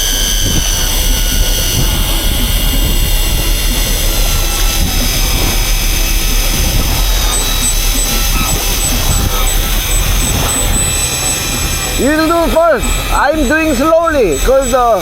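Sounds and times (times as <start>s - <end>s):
boat engine rumble: 0.0s - 15.0s
electric fishing reels whining: 0.0s - 15.0s.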